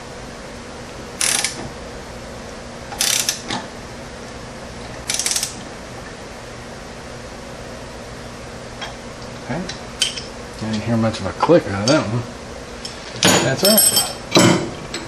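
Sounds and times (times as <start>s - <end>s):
torque wrench ratcheting: 1.2s - 1.6s, 3.0s - 3.4s, 5.1s - 5.6s
wrench click: 1.2s - 1.6s, 3.0s - 3.4s, 5.1s - 5.6s.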